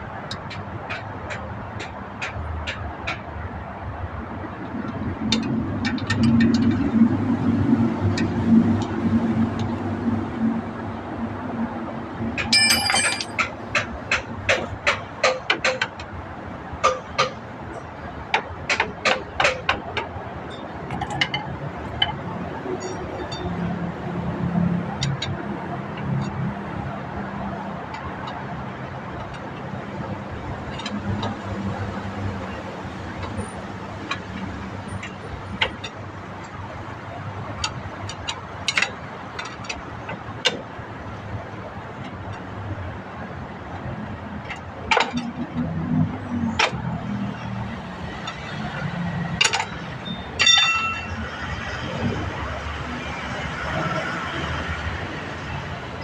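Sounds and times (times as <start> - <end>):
hand tools clicking on metal: 12.4 - 13.9
hammer tapping on metal: 12.4 - 15.9.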